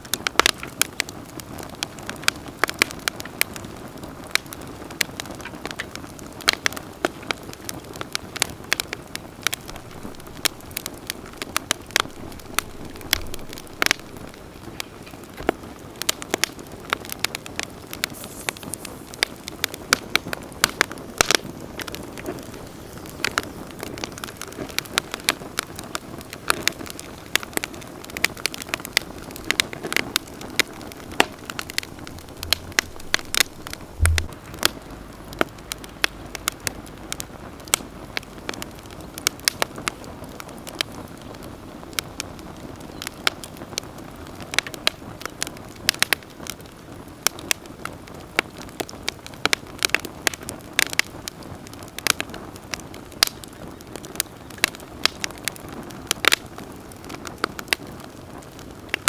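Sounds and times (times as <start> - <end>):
campfire crackling: 0.0 - 59.0
low thump: 31.2 - 35.8.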